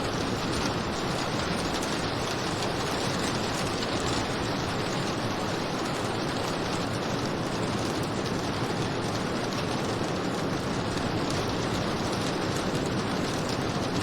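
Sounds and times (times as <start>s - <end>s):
steady rain falling: 0.0s - 14.0s.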